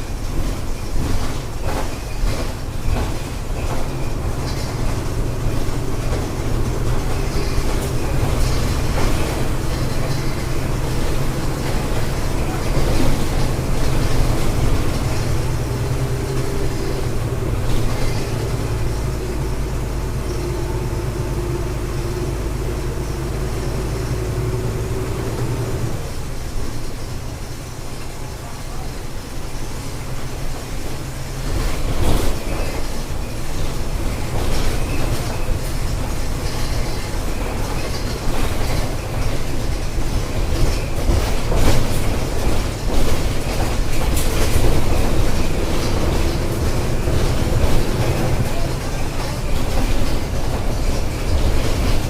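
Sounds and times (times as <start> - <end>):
engine whine: 0.0 - 27.8
bus diesel engine running: 0.0 - 52.0.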